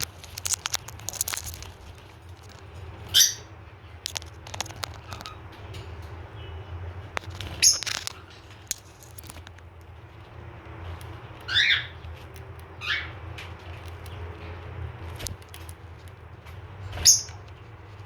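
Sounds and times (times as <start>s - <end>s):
seeds cracking clicks: 0.0s - 3.2s, 4.0s - 5.5s, 7.1s - 9.9s, 15.1s - 16.2s
bird chirps: 7.4s - 8.1s.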